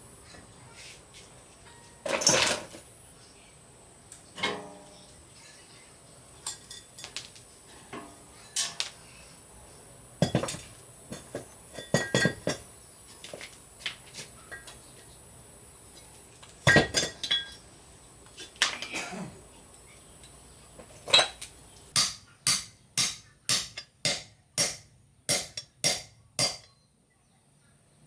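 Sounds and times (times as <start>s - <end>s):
metal tools clinking: 1.7s - 2.9s, 6.4s - 9.0s, 10.2s - 13.4s, 15.9s - 17.7s, 18.3s - 19.2s, 20.2s - 21.6s.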